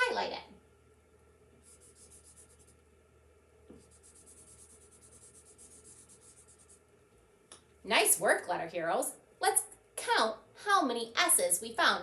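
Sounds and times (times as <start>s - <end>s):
marker scratching on paper: 1.6s - 2.8s, 3.7s - 6.8s.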